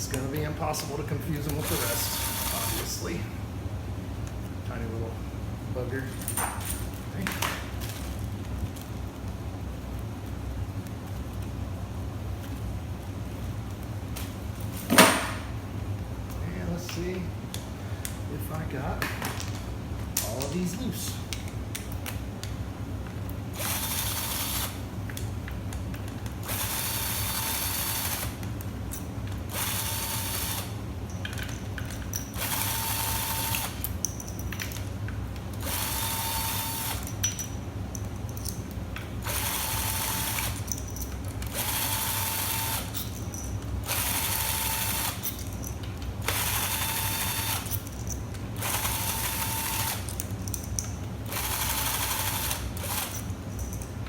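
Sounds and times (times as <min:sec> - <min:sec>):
power tool motor whine: 0:01.6 - 0:02.9, 0:23.6 - 0:24.8, 0:26.5 - 0:28.4, 0:29.5 - 0:30.8, 0:32.4 - 0:33.8, 0:35.6 - 0:37.1, 0:39.2 - 0:40.6, 0:41.5 - 0:43.0, 0:43.9 - 0:45.2, 0:46.2 - 0:47.8, 0:48.6 - 0:50.1, 0:51.3 - 0:53.2.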